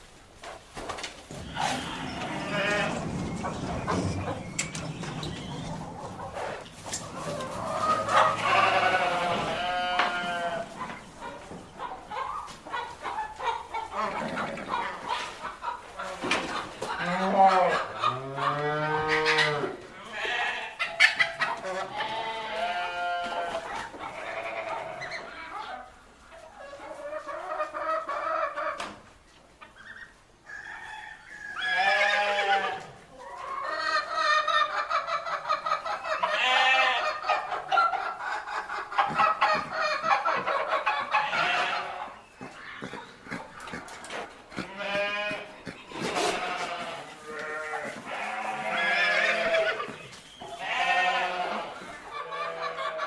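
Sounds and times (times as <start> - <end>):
chickens clucking: 0.0 - 53.0
goats bleating: 1.3 - 10.8, 16.9 - 21.0, 21.6 - 25.2, 31.7 - 33.0, 36.2 - 37.3, 41.0 - 53.0.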